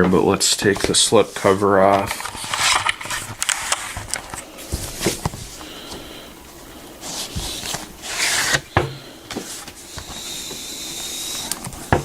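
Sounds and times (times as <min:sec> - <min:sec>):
cardboard scraping slide: 0:07.0 - 0:08.7.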